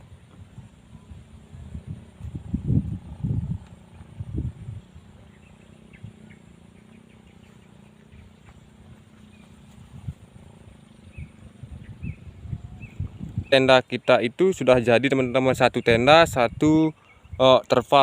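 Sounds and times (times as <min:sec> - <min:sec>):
wind buffeting microphone: 0:00.0 - 0:18.0
faint bird chirps: 0:03.0 - 0:14.3, 0:15.2 - 0:17.6.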